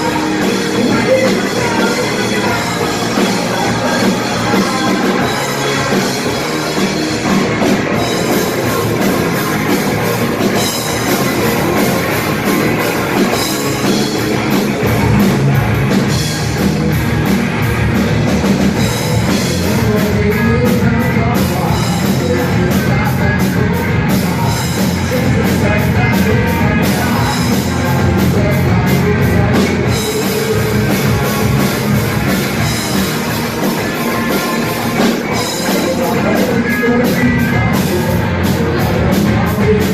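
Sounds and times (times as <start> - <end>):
driving drum kit beat: 0.0 - 39.9
rock band playing: 0.0 - 39.9.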